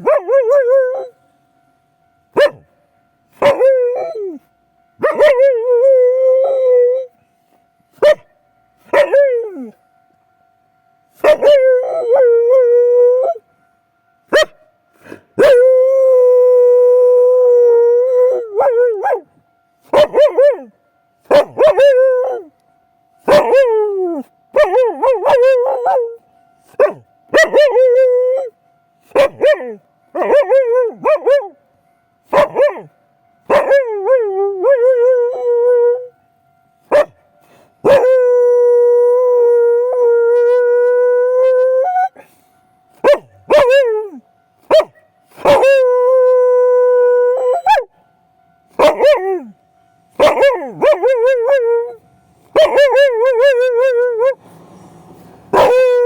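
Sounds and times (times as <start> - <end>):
dog barking: 0.0 - 1.1, 2.4 - 2.7, 3.4 - 4.2, 5.0 - 5.4, 8.0 - 8.3, 8.9 - 9.3, 11.2 - 12.1, 14.3 - 14.6, 19.9 - 20.7, 21.3 - 22.4, 23.3 - 23.7, 24.6 - 26.0, 26.7 - 27.8, 29.1 - 31.5, 32.3 - 32.9, 33.5 - 34.2, 36.9 - 37.2, 43.0 - 44.0, 44.7 - 45.8, 48.8 - 49.4, 50.2 - 51.7, 52.6 - 54.4, 55.5 - 56.0
dog howling: 0.0 - 1.2, 3.4 - 7.2, 8.9 - 9.8, 11.2 - 13.4, 15.4 - 19.3, 19.9 - 20.7, 21.3 - 22.5, 23.3 - 26.2, 26.8 - 31.6, 32.3 - 32.9, 33.5 - 36.1, 37.8 - 42.3, 43.0 - 47.9, 48.8 - 49.6, 50.2 - 54.4, 55.5 - 56.0
railway crossing warning bell: 0.0 - 56.0.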